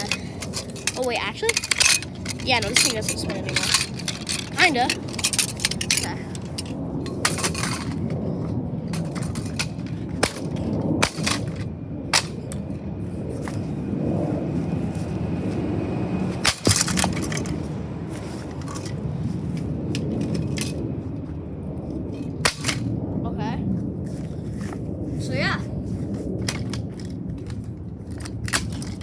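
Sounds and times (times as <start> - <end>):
plastic ceiling fan being smashed: 0.0 - 8.2, 8.9 - 12.6, 16.4 - 17.6, 22.4 - 22.9, 26.4 - 29.0.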